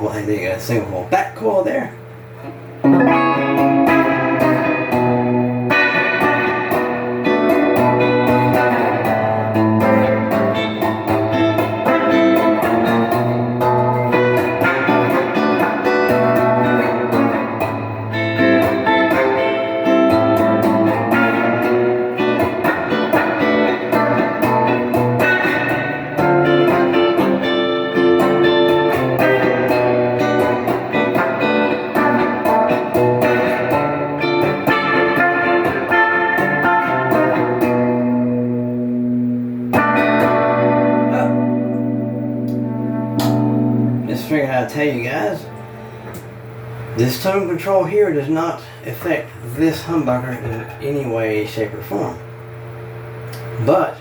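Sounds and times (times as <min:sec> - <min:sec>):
bluesy electric guitar: 0:00.0 - 0:54.0.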